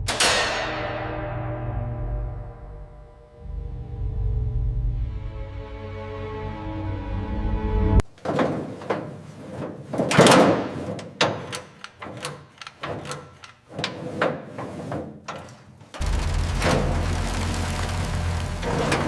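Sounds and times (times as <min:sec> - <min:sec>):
knocks and clatters: 0:08.0 - 0:19.0
rushing scrape: 0:16.0 - 0:19.0.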